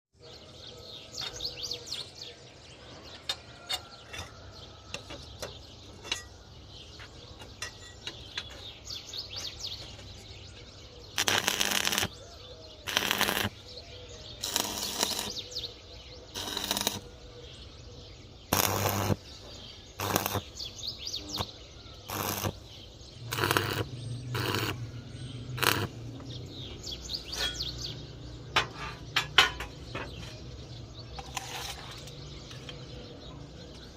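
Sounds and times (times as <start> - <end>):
birds chirping: 0.1 - 33.9.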